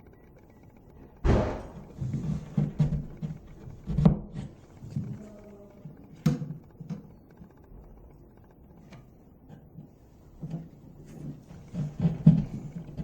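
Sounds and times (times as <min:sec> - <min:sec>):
knocks and clunks of tools: 0:01.2 - 0:05.0.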